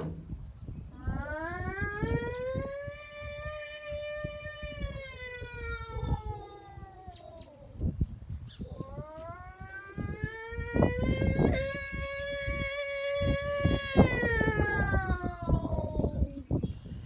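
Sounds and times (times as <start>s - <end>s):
knocks: 0.0s - 0.3s
tornado siren wailing: 0.9s - 7.9s, 8.6s - 16.5s.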